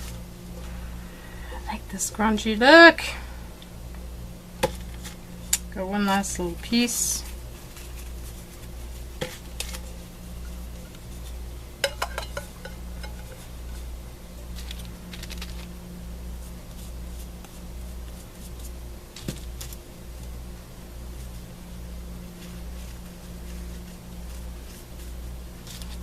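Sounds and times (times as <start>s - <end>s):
steady low hum: 0.0s - 26.0s
scratchy rustling: 4.8s - 20.4s, 21.0s - 26.0s.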